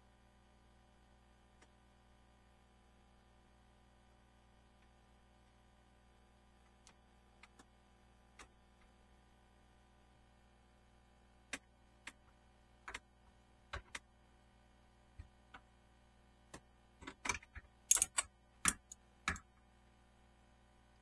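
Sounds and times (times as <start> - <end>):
hard objects clicking and knocking: 17.0 - 19.4.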